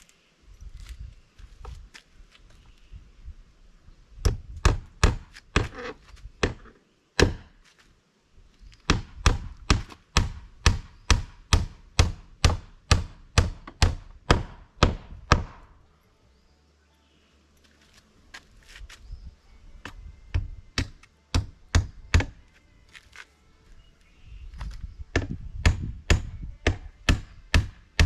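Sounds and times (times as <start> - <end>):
hand tool striking wood: 19.8 - 22.4.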